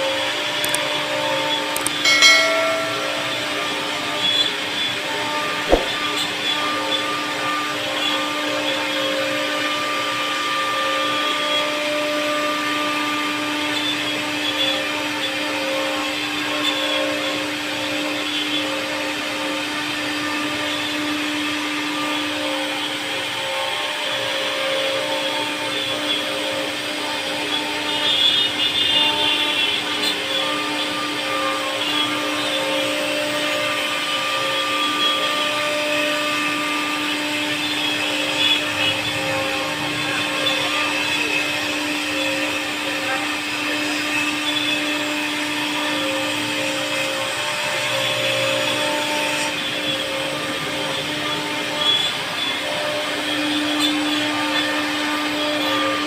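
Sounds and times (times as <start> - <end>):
wood router whining: 30.4 - 56.0.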